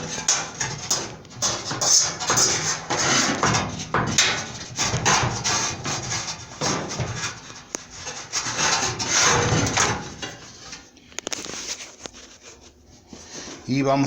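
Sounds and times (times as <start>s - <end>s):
dryer parts scraping: 0.0s - 14.0s.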